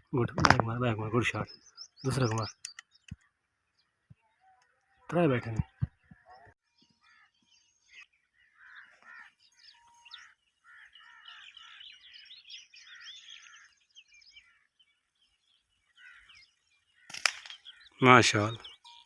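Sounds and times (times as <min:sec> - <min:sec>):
starlings chattering: 0:00.0 - 0:19.0
air rifle shot: 0:17.1 - 0:17.6.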